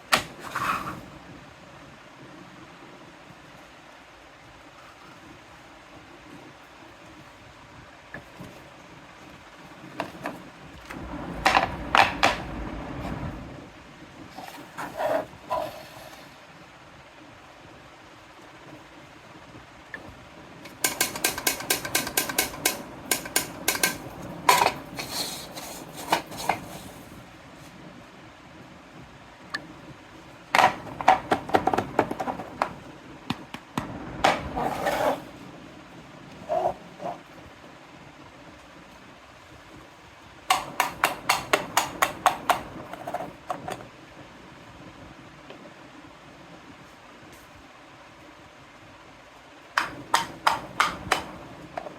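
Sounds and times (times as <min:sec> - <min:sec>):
scraping rustle: 0:00.2 - 0:01.1, 0:10.0 - 0:16.5, 0:23.8 - 0:27.9, 0:34.4 - 0:35.5
low rumble: 0:10.8 - 0:14.3
objects knocking and clacking: 0:20.7 - 0:26.7, 0:30.6 - 0:34.5, 0:40.5 - 0:43.8, 0:49.8 - 0:51.9.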